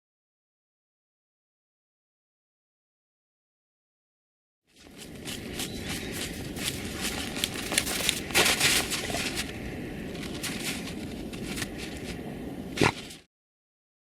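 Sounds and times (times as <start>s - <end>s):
crackling and crunching: 4.9s - 12.2s
steady rushing noise: 4.9s - 12.8s.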